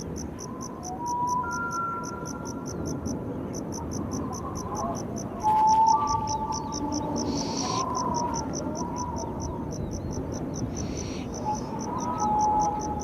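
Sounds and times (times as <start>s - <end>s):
insect chirping: 0.0s - 13.0s
faint thin whistled tones: 0.4s - 2.6s, 5.4s - 9.6s.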